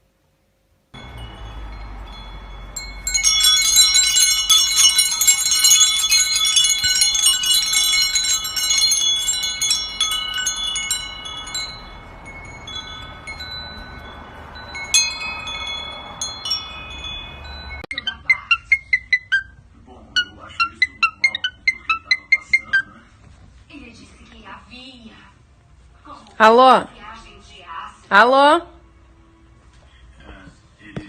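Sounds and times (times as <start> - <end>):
metal chimes tinkling: 1.0 - 19.4.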